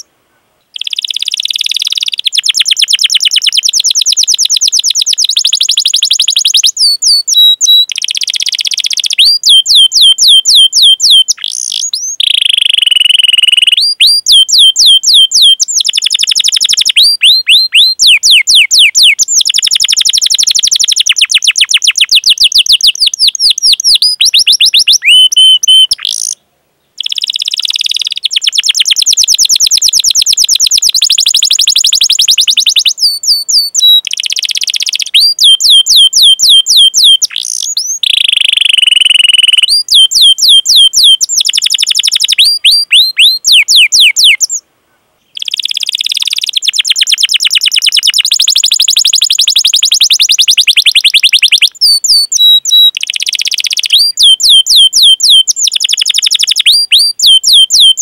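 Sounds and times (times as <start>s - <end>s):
canary singing trills and chirps: 0.7s - 26.4s, 27.0s - 44.6s, 45.3s - 58.0s.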